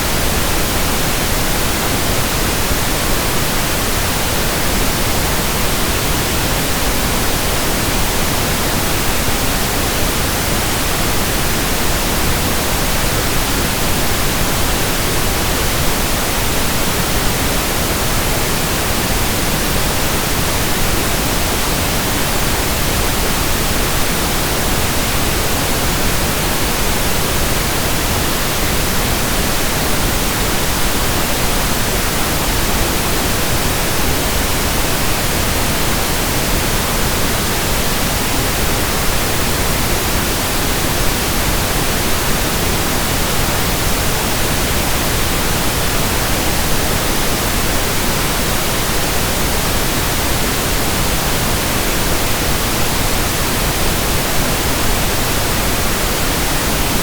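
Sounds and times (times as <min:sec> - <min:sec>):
steady pink noise hiss: 0:00.0 - 0:57.0.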